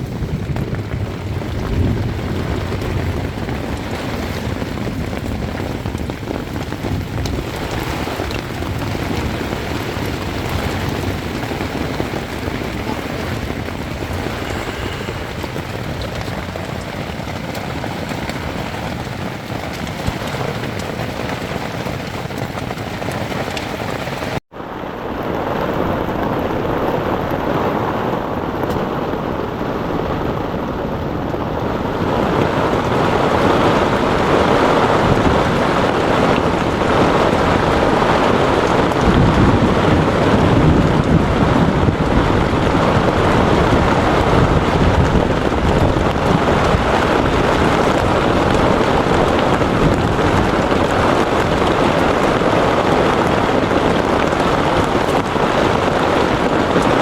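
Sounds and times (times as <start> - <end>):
heavy rain pouring: 0.0 - 57.0.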